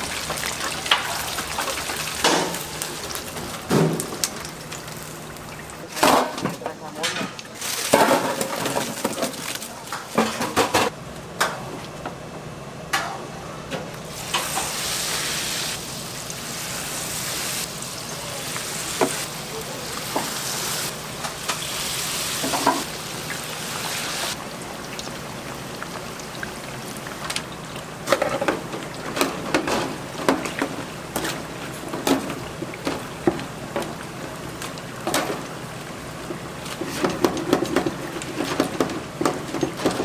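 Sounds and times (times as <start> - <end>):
hot oil sizzling in fryer: 0.0 - 6.2, 7.4 - 10.1, 14.0 - 40.0
cooking utensils clattering: 5.9 - 11.6, 22.3 - 24.4, 36.7 - 40.0.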